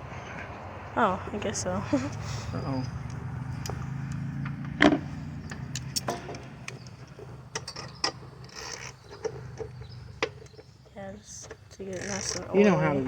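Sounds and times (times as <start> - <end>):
metal parts clicking and tapping: 5.5 - 10.7
metal parts scraping: 7.6 - 9.7.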